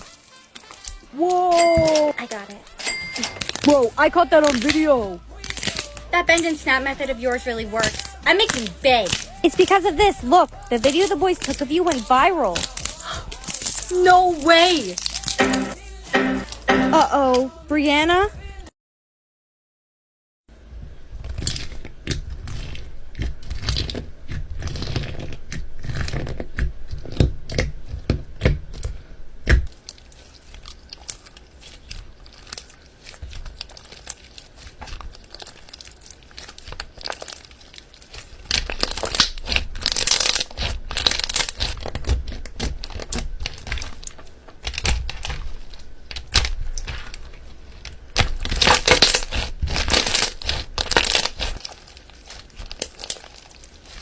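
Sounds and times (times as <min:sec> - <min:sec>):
slime crackling and popping: 0:00.0 - 0:17.5, 0:21.0 - 0:54.0.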